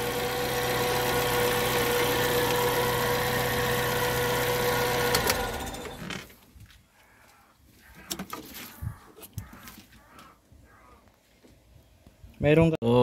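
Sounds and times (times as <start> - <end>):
car engine idling: 0.0 - 6.0.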